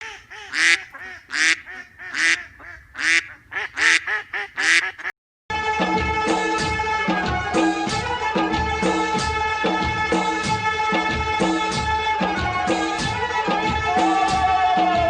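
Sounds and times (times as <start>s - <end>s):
duck quacking: 0.0s - 5.1s
music: 5.5s - 15.0s.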